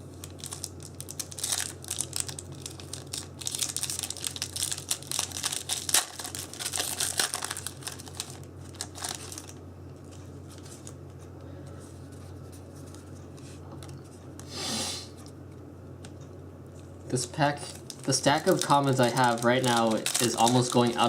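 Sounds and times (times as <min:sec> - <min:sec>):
foil wrappers crinkling and tearing: 0:00.2 - 0:11.0, 0:17.1 - 0:21.0.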